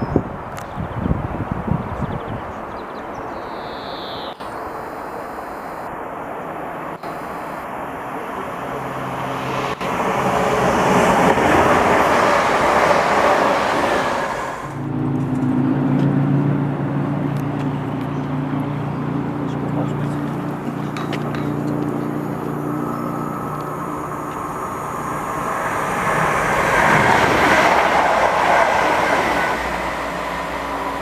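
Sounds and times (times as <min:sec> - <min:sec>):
train rumbling past: 0:06.0 - 0:17.0, 0:19.8 - 0:31.0.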